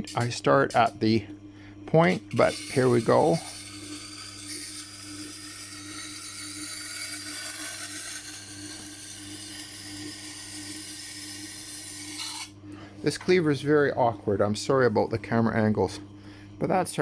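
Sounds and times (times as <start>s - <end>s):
wet grinder humming: 0.0s - 14.6s
blade grinding on stone: 2.3s - 12.6s.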